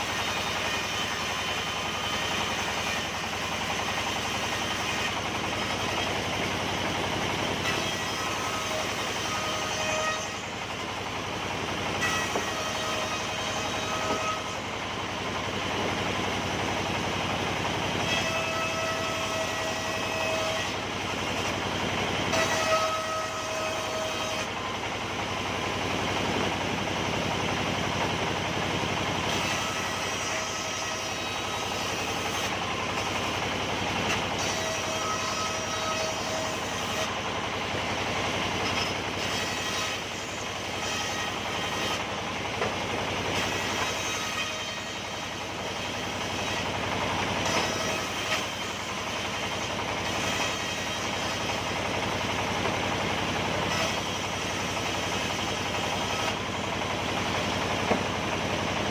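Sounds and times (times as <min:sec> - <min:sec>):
sawmill saw cutting timber: 0:00.0 - 0:58.9.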